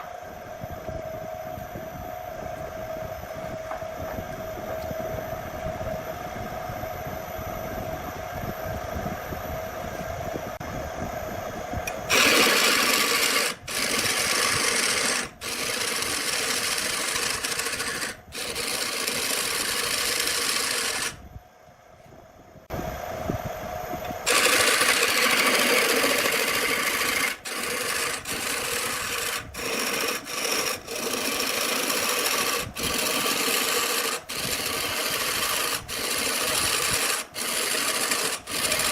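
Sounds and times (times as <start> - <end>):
power tool humming: 11.9 - 21.2, 24.2 - 38.9
harsh grinding on wood: 12.1 - 21.2, 24.3 - 38.9.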